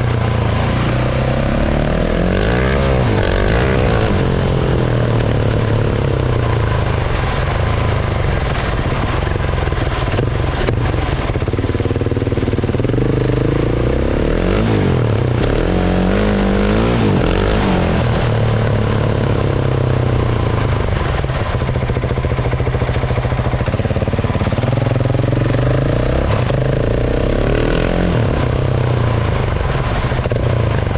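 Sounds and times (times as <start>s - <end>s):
motorcycle engine revving: 0.0s - 30.9s.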